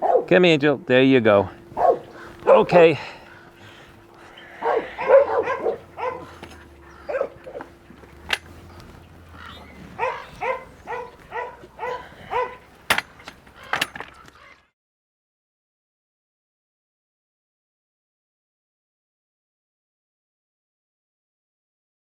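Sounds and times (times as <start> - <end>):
dog barking: 0.0 - 0.4, 1.7 - 2.8, 4.6 - 7.7, 9.4 - 12.6.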